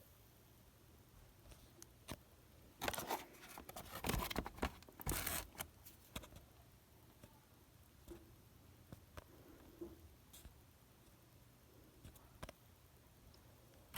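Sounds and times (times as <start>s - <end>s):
packaging rustling and scraping: 2.8s - 6.2s.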